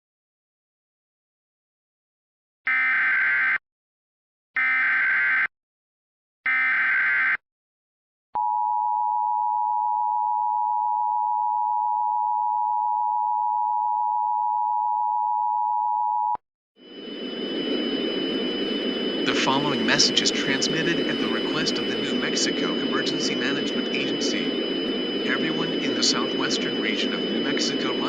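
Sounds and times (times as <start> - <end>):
high whine: 16.8 - 28.0
warbling data tones: 16.8 - 28.0.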